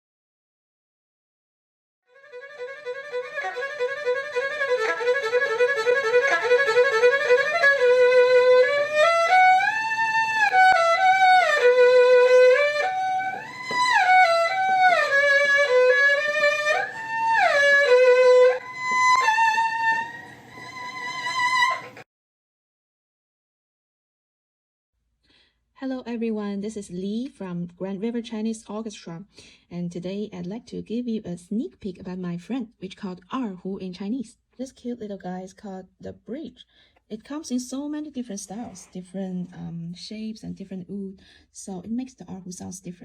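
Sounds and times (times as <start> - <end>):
erhu melody: 2.1 - 22.0.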